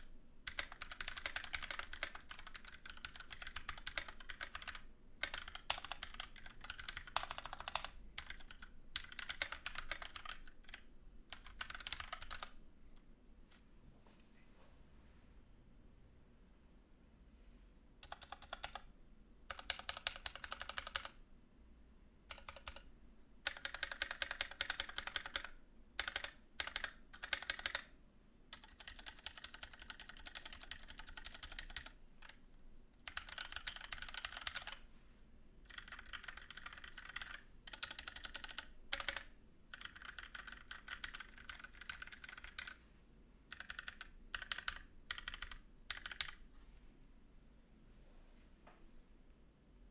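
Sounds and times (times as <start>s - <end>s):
mechanical keyboard keys clacking: 0.5s - 12.6s, 19.5s - 21.2s, 22.3s - 22.8s, 23.5s - 27.8s, 28.5s - 32.4s, 33.1s - 34.8s, 35.7s - 42.8s, 43.5s - 46.4s.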